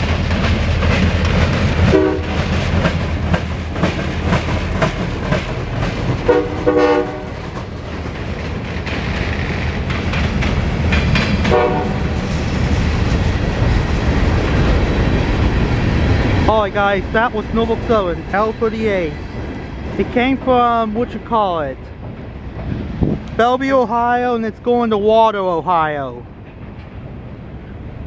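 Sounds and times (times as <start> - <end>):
train wheels clicking on rail joints: 0.0 - 23.9, 26.2 - 28.0
locomotive engine rumbling: 0.0 - 28.0
train horn blasts: 1.9 - 2.4, 6.3 - 7.4, 11.5 - 12.2.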